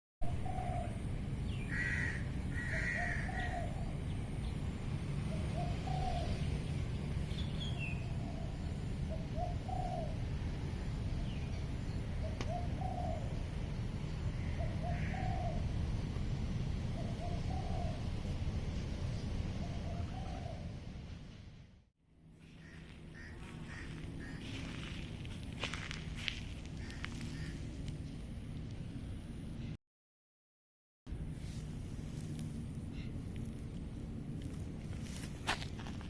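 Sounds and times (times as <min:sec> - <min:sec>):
higher bird calls: 0:00.2 - 0:04.0, 0:14.3 - 0:15.7, 0:22.4 - 0:28.1
steady low rumble: 0:00.2 - 0:29.8, 0:31.1 - 0:36.0
bird low double-noted call: 0:14.4 - 0:15.6, 0:22.4 - 0:25.0, 0:26.8 - 0:27.7.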